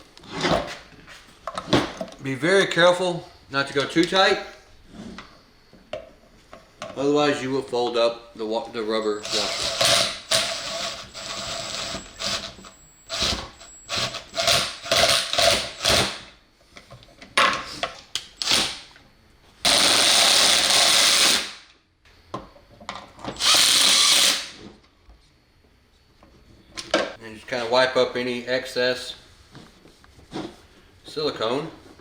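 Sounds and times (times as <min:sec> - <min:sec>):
power drill driving bolts: 0:09.2 - 0:16.3, 0:23.3 - 0:24.6.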